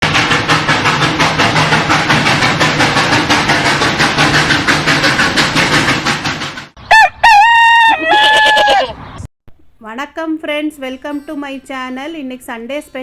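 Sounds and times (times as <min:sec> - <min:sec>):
machine humming with rapid pulse: 0:00.0 - 0:06.8.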